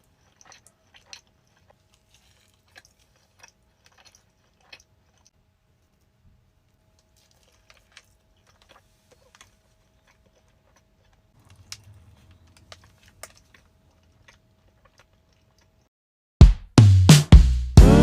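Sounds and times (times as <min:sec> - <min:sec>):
soft mouth clicks while chewing: 0:00.0 - 0:06.0, 0:07.0 - 0:15.9.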